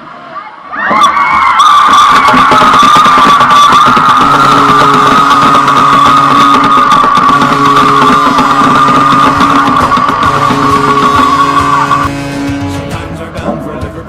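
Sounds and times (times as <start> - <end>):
loud horn blaring: 1.6 - 13.2
arena music: 4.2 - 14.0.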